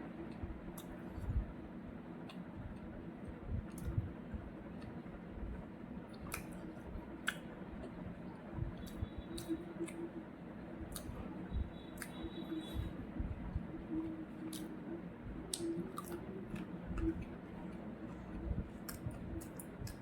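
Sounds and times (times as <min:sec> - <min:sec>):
low steady hum: 0:00.0 - 0:20.0
chewing: 0:15.5 - 0:20.0.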